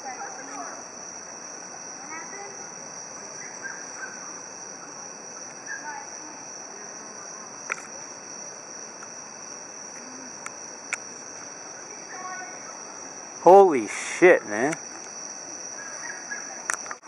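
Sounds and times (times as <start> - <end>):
crickets droning: 0.0 - 17.0.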